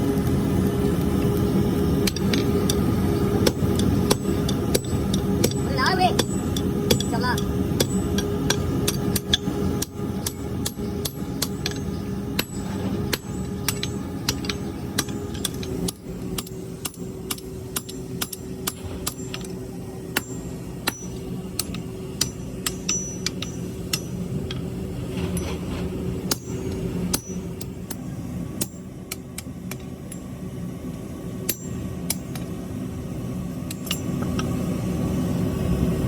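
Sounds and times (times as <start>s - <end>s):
low machine hum: 0.0s - 36.0s
hammer striking steel: 6.2s - 9.4s, 16.4s - 19.5s, 20.1s - 24.2s, 26.3s - 28.0s, 31.5s - 32.2s.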